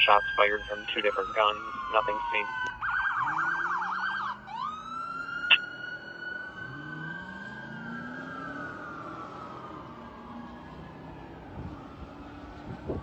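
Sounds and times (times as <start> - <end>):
fire engine siren: 0.0 - 13.0.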